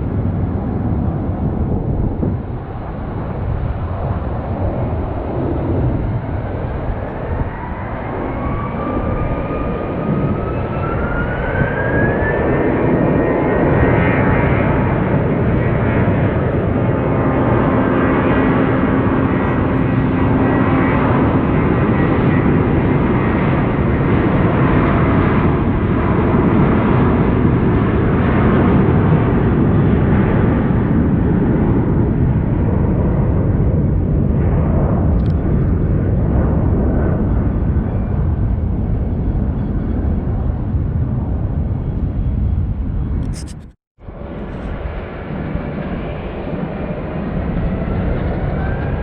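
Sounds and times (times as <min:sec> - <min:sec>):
jet engines passing: 0:00.0 - 0:49.0.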